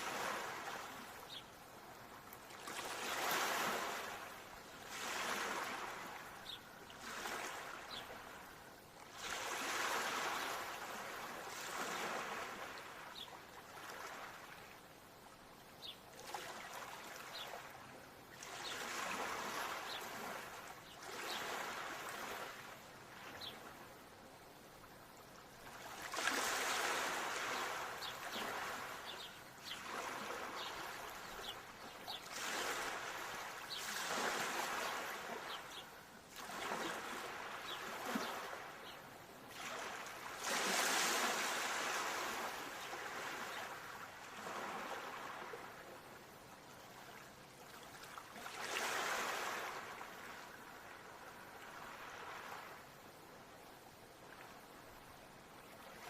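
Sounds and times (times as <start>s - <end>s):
ocean waves washing in: 0.0s - 14.9s, 18.3s - 23.8s, 25.0s - 46.4s.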